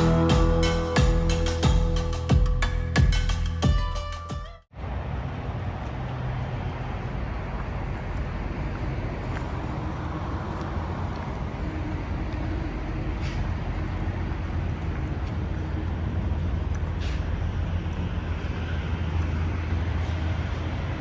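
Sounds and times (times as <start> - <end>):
truck diesel engine running: 0.0 - 3.6.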